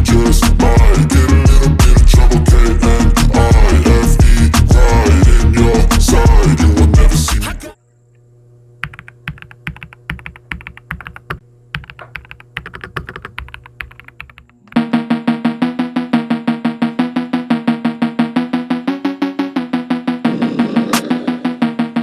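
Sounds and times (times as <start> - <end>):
music with steady beat: 0.0 - 7.5, 14.7 - 20.2.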